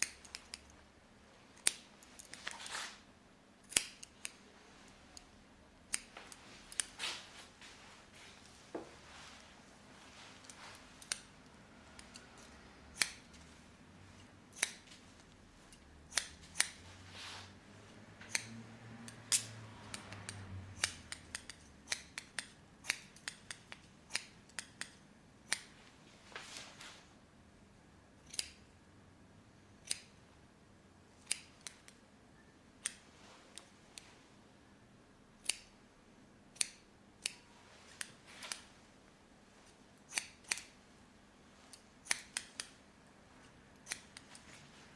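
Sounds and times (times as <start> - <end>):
scissors snipping: 0.0 - 0.7, 3.6 - 4.4, 5.9 - 7.0, 10.4 - 11.3, 11.9 - 13.4, 14.5 - 14.9, 15.7 - 16.8, 18.2 - 25.7, 28.3 - 28.6, 31.2 - 32.0, 40.1 - 40.8, 41.7 - 42.8, 43.8 - 44.4.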